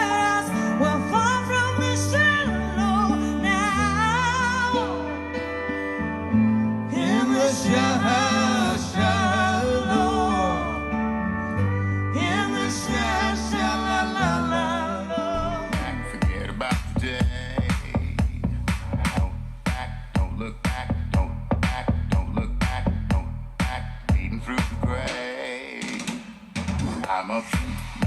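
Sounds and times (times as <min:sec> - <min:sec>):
wordless singing with held notes: 0:00.0 - 0:17.9, 0:24.9 - 0:26.4
steady bass chords: 0:00.0 - 0:25.2, 0:26.6 - 0:28.0.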